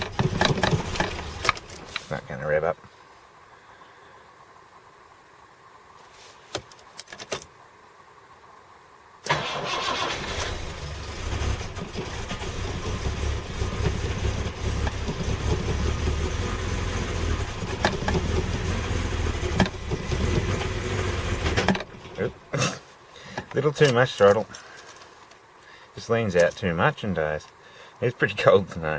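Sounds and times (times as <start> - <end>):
car engine starting unevenly: 0.0 - 2.2, 9.2 - 22.7.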